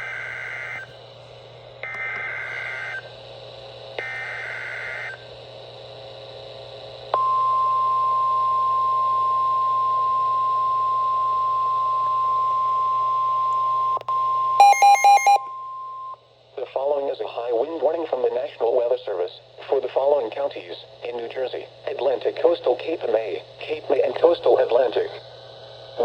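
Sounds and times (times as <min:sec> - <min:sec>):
steady warning alarm tone: 0:00.0 - 0:00.9, 0:01.8 - 0:03.1, 0:04.0 - 0:05.3, 0:07.2 - 0:16.2.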